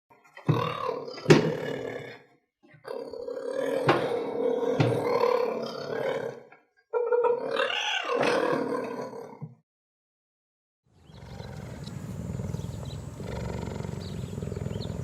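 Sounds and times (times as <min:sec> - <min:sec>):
cheetah vocalising: 0:07.0 - 0:08.9, 0:11.1 - 0:15.0.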